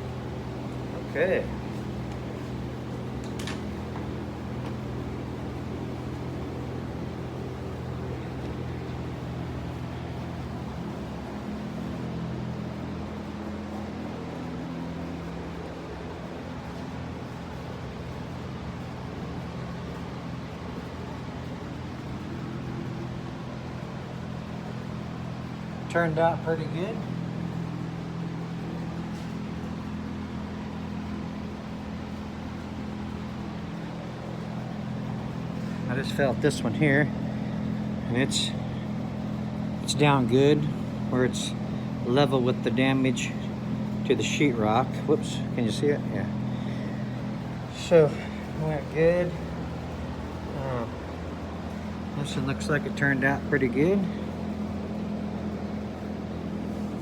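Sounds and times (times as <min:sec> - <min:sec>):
low electric drone: 0:00.0 - 0:16.4, 0:29.8 - 0:57.0
mechanical hum: 0:00.0 - 0:57.0.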